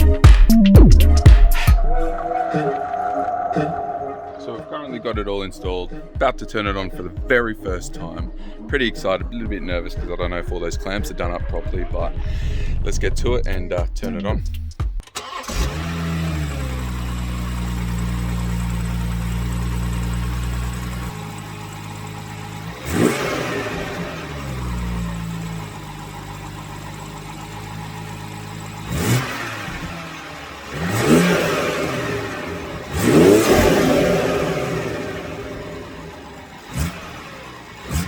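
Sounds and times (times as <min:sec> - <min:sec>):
car engine starting and idling: 0:00.0 - 0:38.0
engine revving: 0:14.5 - 0:38.0.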